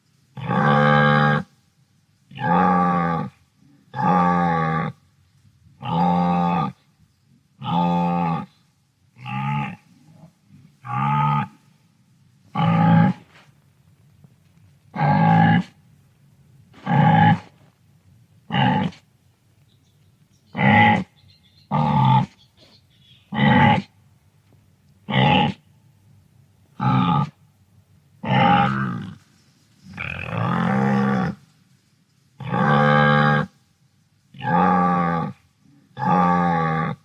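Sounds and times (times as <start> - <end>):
wildebeest grunting: 20.5 - 22.4, 23.3 - 23.9.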